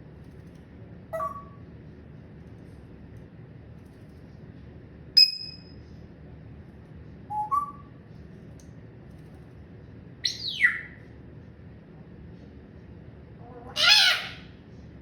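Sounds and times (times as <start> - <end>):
parrot whistled calls: 1.2 - 1.6, 7.3 - 7.9, 10.2 - 11.0, 13.7 - 14.5.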